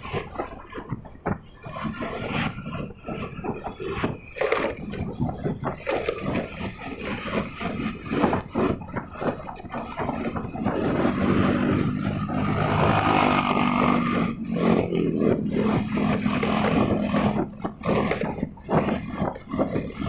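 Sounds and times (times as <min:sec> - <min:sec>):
vehicle road noise rumble: 0:00.0 - 0:20.0
engine humming: 0:08.3 - 0:20.0.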